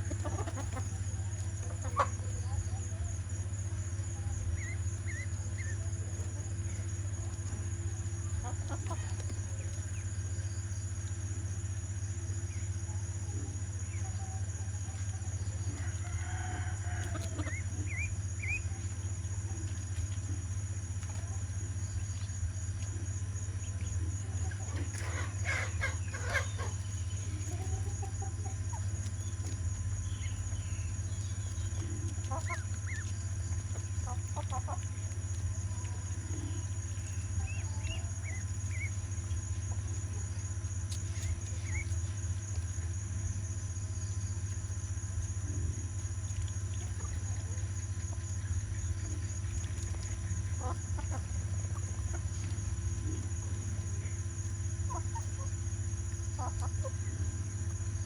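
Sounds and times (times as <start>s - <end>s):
chickens calling: 0.0s - 2.7s, 7.2s - 10.0s, 15.7s - 19.8s, 23.9s - 35.4s, 40.9s - 42.2s, 46.8s - 57.3s
steady low hum: 0.0s - 58.0s.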